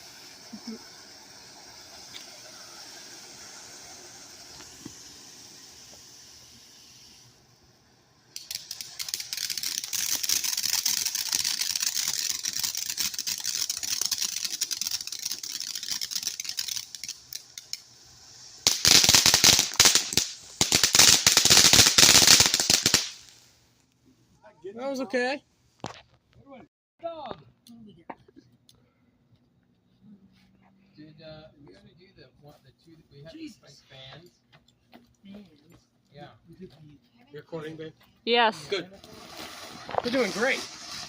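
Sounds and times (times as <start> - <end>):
fireworks crackling: 0.0 - 23.9, 37.6 - 41.0
fireworks cracks and pops: 0.0 - 23.9, 25.8 - 26.2, 38.6 - 41.0.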